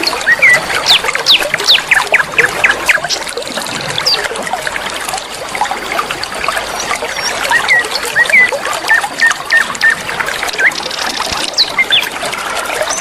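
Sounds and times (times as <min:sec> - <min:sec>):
small birds chirping: 0:00.0 - 0:03.3, 0:06.8 - 0:12.2
river water trickling: 0:00.0 - 0:13.0.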